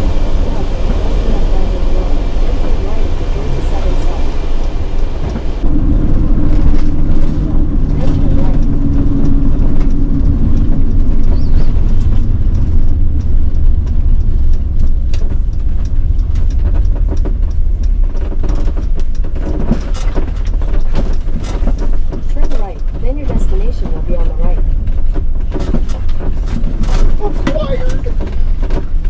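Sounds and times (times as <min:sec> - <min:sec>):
van road and engine rumble: 0:00.0 - 0:29.0
rattles and knocks: 0:05.2 - 0:29.0.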